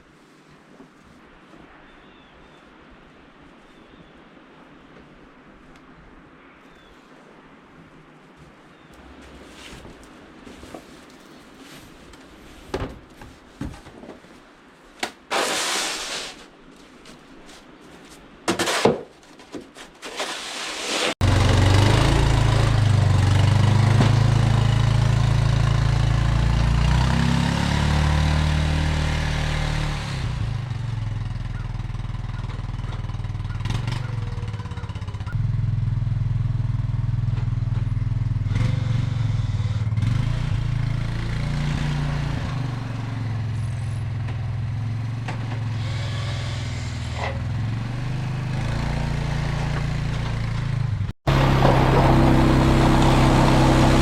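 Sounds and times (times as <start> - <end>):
garden tractor engine running: 21.2 - 27.2, 44.3 - 54.0.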